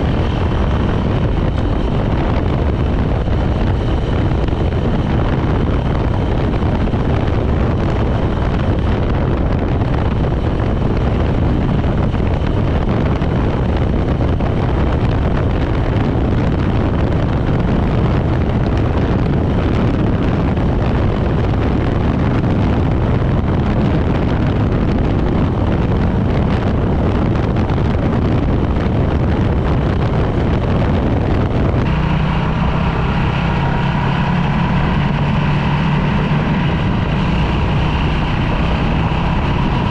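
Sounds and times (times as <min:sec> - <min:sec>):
motorcycle engine running: 0:00.0 - 0:39.9
wind rush on microphone: 0:00.0 - 0:39.9.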